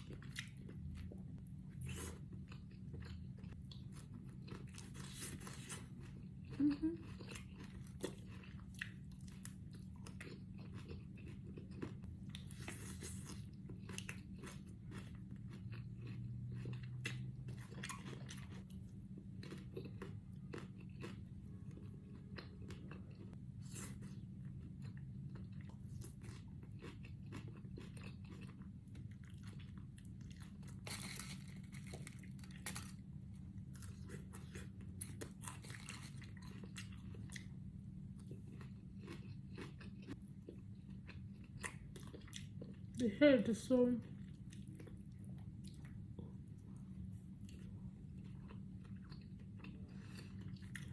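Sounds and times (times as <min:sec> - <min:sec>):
person chewing and crunching food: 0:00.0 - 0:43.1, 0:44.0 - 0:50.9
steady low hum: 0:00.0 - 0:50.9.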